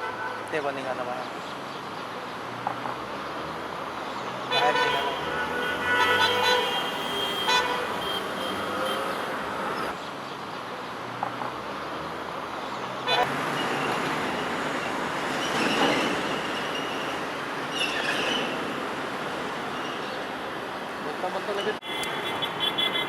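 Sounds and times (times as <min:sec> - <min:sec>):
road traffic rumbling: 0:00.0 - 0:23.0
car horns honking: 0:04.5 - 0:09.4, 0:21.8 - 0:23.0.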